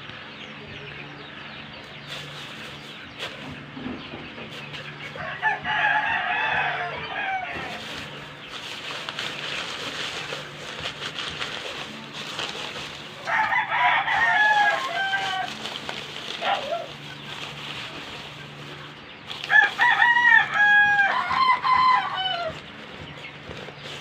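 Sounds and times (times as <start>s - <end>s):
chicken clucking: 0.1s - 24.0s
rooster crowing: 5.2s - 7.9s, 13.2s - 15.7s, 19.5s - 22.6s.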